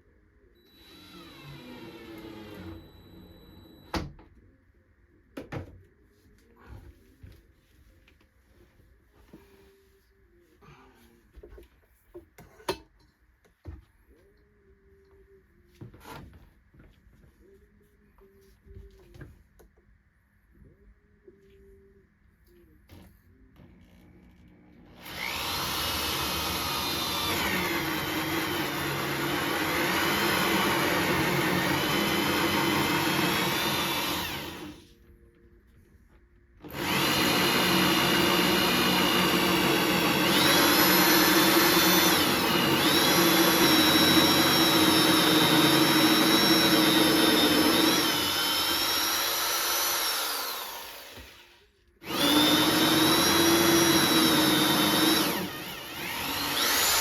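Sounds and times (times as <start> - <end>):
electric drill cutting wood: 0.7 - 4.1, 25.0 - 34.9, 36.7 - 57.0.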